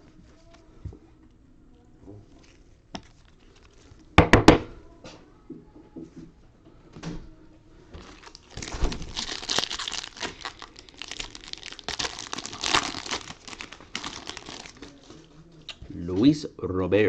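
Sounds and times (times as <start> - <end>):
wrapper being torn and crinkled: 2.4 - 4.1, 8.0 - 15.3.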